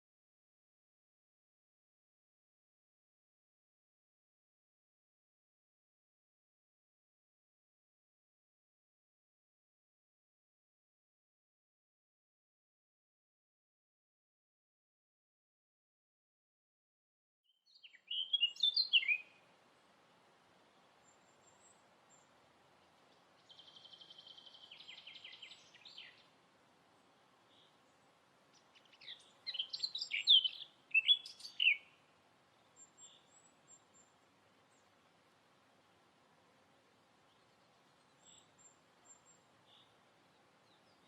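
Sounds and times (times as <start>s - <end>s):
faint background hiss: 17.5s - 41.0s
songbirds singing: 17.5s - 41.0s.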